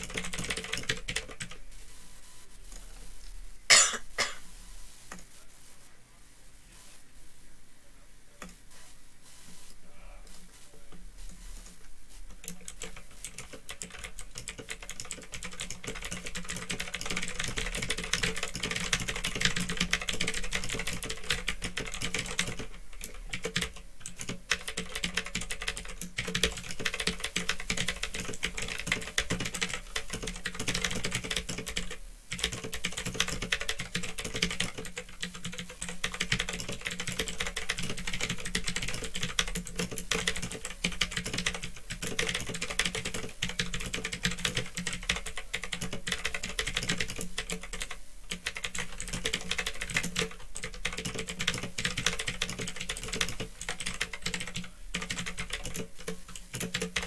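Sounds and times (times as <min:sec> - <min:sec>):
typing on mechanical keyboard: 0:00.0 - 0:01.6, 0:12.3 - 0:57.0
microphone electrical hum: 0:00.0 - 0:16.4.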